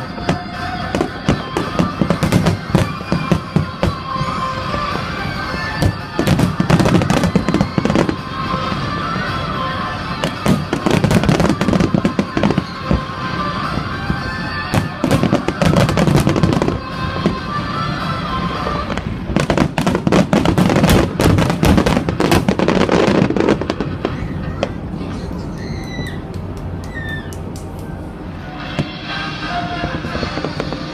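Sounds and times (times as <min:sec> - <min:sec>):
music playing: 0:00.0 - 0:25.4, 0:26.4 - 0:30.9
fireworks bangs and crackling: 0:00.0 - 0:30.9.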